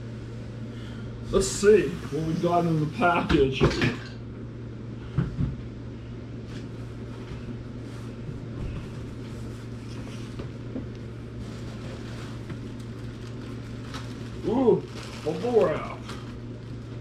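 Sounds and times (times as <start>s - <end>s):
steady low hum: 0.0s - 17.0s
package clicks and rustles: 12.6s - 16.9s.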